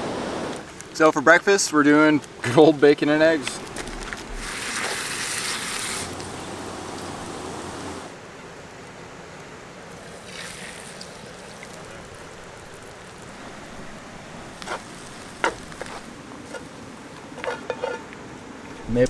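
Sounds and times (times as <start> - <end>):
river water rushing: 0.0 - 0.7, 3.2 - 8.2.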